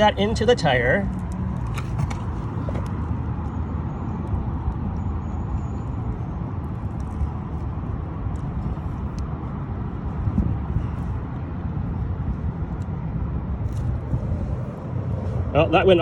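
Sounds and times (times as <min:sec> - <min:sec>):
road traffic rumble: 0:00.0 - 0:16.0.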